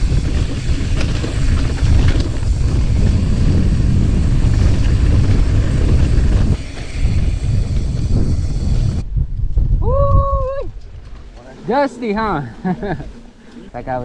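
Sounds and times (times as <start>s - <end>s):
strong wind buffeting microphone: 0.0s - 14.0s.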